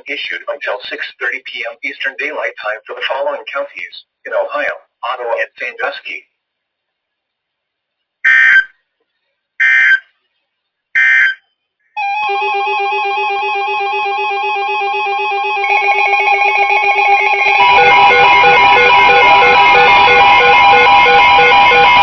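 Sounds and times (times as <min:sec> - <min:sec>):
layered electronic tones: 0:12.0 - 0:22.0.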